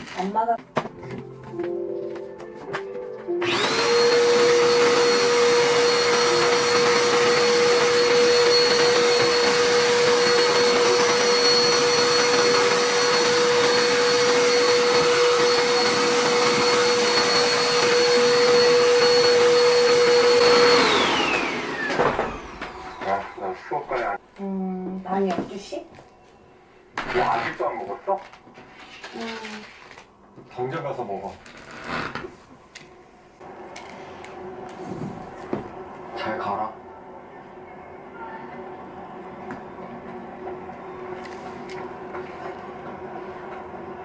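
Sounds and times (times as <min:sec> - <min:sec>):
electric blower whining: 0:03.3 - 0:24.1
motor winding down: 0:03.4 - 0:23.5.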